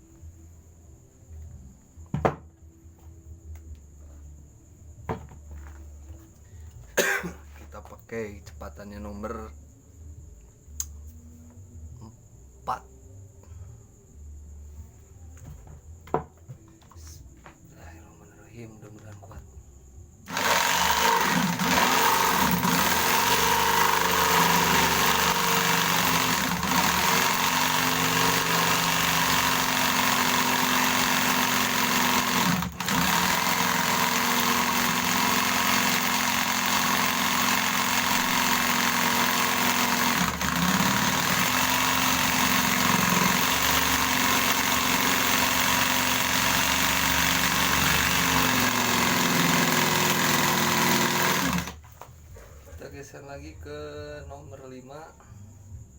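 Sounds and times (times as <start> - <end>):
jigsaw cutting wood: 20.3 - 51.8.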